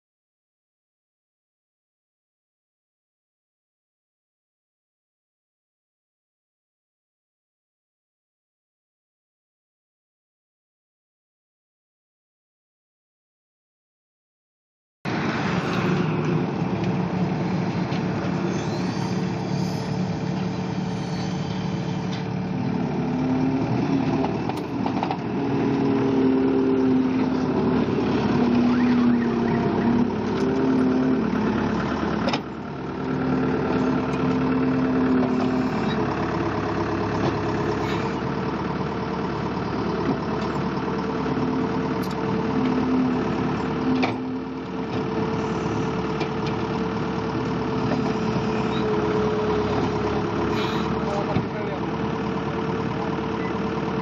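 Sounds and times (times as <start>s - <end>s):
diesel loader engine running: 15.1s - 54.0s.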